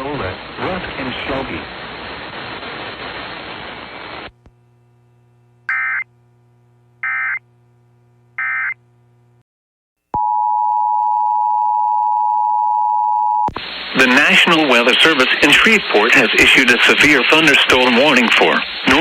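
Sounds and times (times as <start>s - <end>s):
radio hiss: 0.0s - 4.4s, 13.6s - 19.0s.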